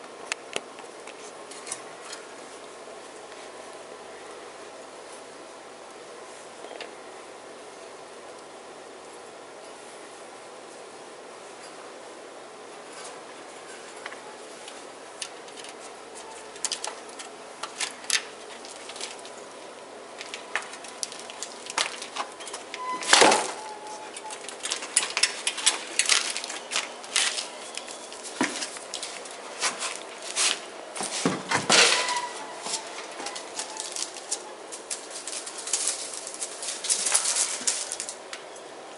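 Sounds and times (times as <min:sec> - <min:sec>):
ferrets clicking and tapping: 0:14.1 - 0:22.8, 0:31.7 - 0:38.6.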